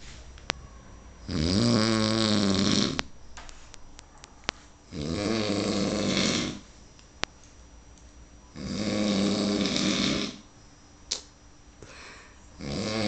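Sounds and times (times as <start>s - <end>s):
person snoring heavily: 1.3s - 3.0s, 4.9s - 6.7s, 8.5s - 10.5s, 11.9s - 13.0s
quiet breathing: 11.8s - 12.6s.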